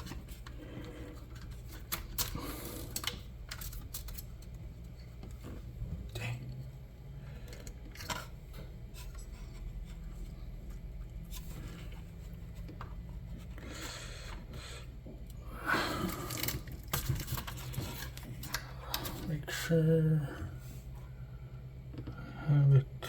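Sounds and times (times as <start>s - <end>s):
steady low hum: 0.0s - 23.0s
scraping and rubbing of metal parts: 16.3s - 19.3s.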